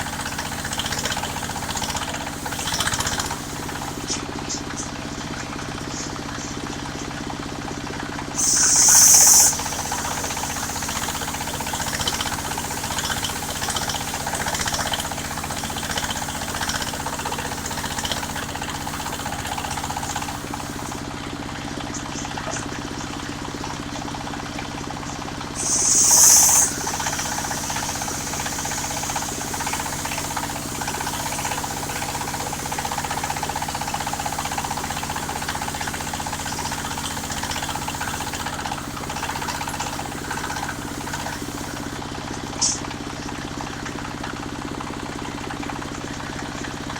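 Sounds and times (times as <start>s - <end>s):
high-pitched saw bursts: 0.0s - 4.2s, 8.4s - 21.0s, 25.6s - 42.0s
sawmill engine running: 0.0s - 4.2s, 8.4s - 21.1s, 25.5s - 42.1s.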